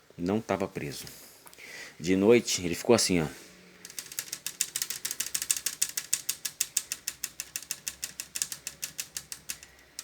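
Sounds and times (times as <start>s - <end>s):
air conditioner rapid clicking: 3.8s - 10.0s.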